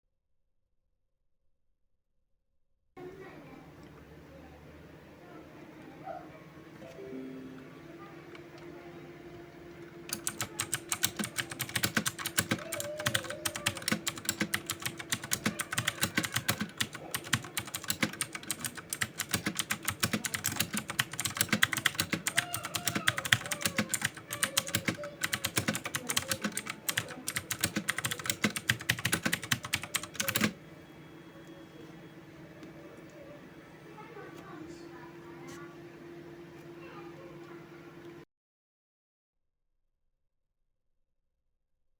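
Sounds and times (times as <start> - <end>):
fast mechanical keyboard typing: 10.1 - 30.6.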